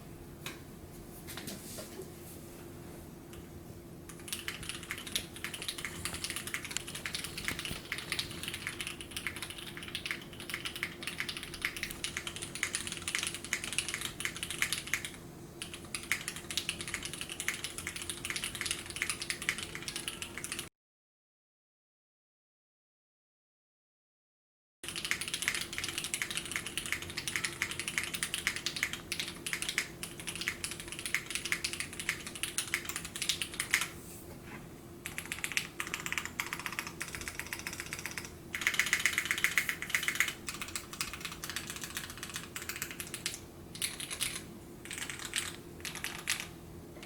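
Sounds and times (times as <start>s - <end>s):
mechanical keyboard typing: 4.1s - 20.7s, 24.8s - 33.9s, 35.0s - 46.5s.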